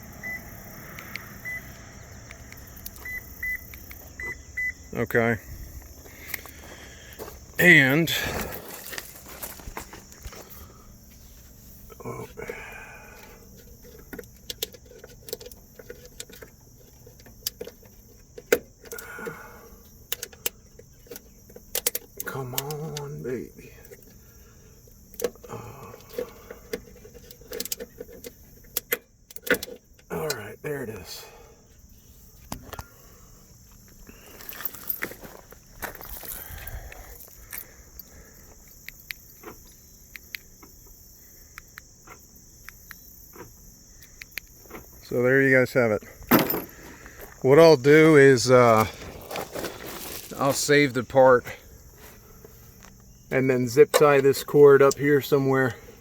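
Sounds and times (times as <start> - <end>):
high insect chirring: 0.0 - 56.0
keys jangling: 34.3 - 36.4.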